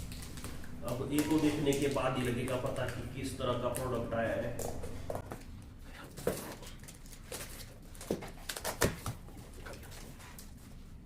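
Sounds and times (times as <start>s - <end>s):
packaging rustling and scraping: 0.0s - 5.2s.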